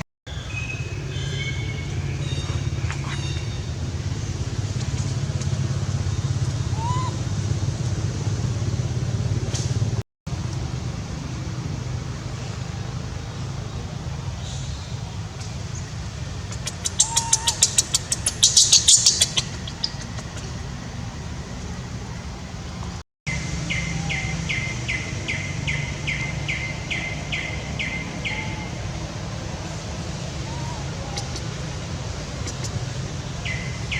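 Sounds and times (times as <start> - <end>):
bird chirping: 0.3 - 3.9, 15.7 - 20.7, 23.3 - 28.8, 30.4 - 31.6, 32.4 - 33.9
low background rumble: 0.3 - 33.9
steady low hum: 0.3 - 33.9.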